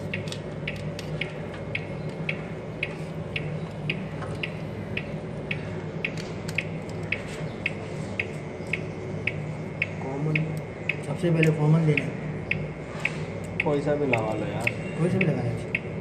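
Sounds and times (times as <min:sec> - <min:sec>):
regular ticking: 0:00.0 - 0:16.0
steady low hum: 0:00.0 - 0:16.0.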